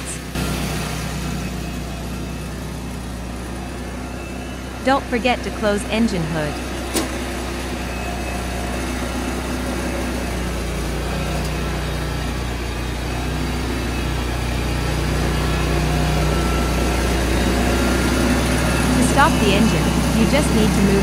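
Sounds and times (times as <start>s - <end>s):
engine running with low hum: 0.0s - 21.0s.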